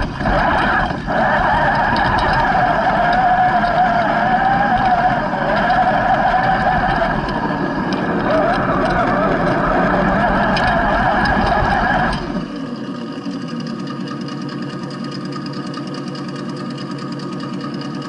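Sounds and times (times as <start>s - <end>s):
electric motor and drivetrain whining: 0.0s - 18.0s.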